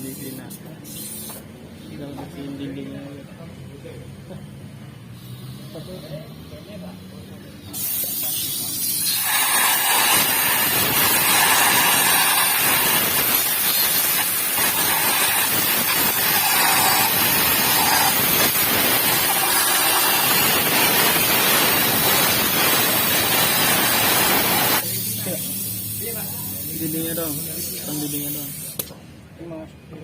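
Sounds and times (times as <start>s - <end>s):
pressurised spray hissing: 0.0s - 1.4s, 7.6s - 28.9s.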